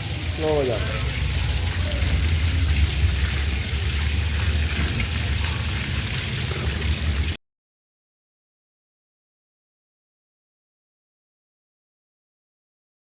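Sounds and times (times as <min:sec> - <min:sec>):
water gushing from a pipe: 0:00.0 - 0:07.4
low rumble: 0:01.0 - 0:05.9.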